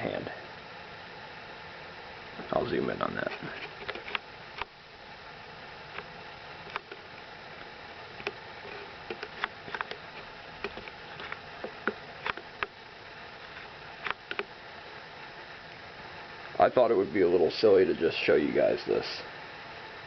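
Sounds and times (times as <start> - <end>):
steady hiss: 0.0 - 20.0
small clicks and taps: 6.7 - 7.0, 7.6 - 12.8, 13.5 - 14.5.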